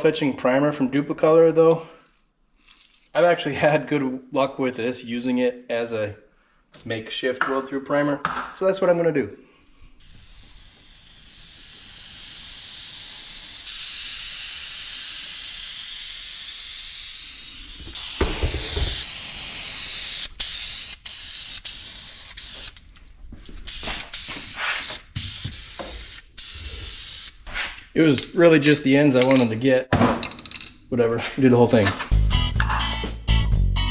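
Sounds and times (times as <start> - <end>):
aerosol spray can hissing: 10.0 - 22.8, 23.7 - 27.4.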